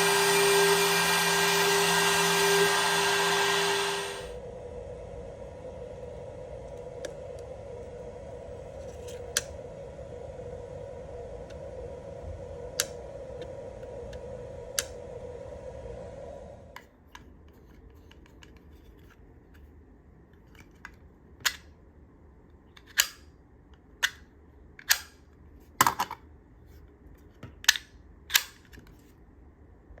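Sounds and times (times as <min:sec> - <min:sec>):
steady hum: 0:00.0 - 0:17.6.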